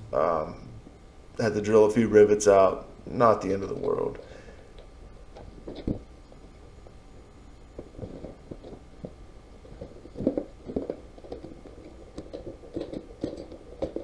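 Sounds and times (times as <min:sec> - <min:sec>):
small hard parts being handled: 0:03.7 - 0:07.0, 0:07.6 - 0:14.0.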